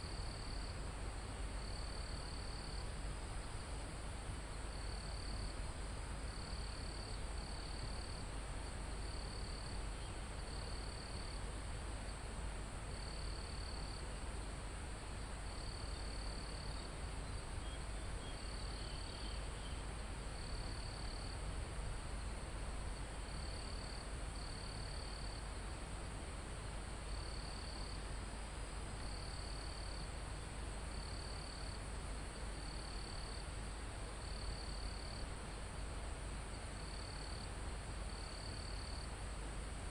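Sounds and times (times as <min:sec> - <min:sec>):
insect trill: 0:15.5 - 0:19.8, 0:20.4 - 0:21.4, 0:27.1 - 0:28.0, 0:29.0 - 0:30.1, 0:32.6 - 0:33.4, 0:34.2 - 0:35.2, 0:38.1 - 0:39.1.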